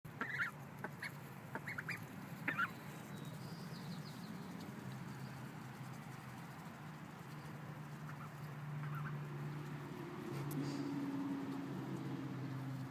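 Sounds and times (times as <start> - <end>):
ducklings peeping: 0.1 - 9.9.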